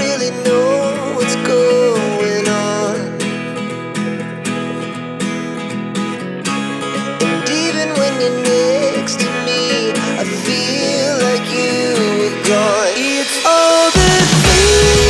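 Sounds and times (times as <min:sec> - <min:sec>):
strummed acoustic guitar music: 0:00.0 - 0:15.0
sliding melody line: 0:07.4 - 0:15.0.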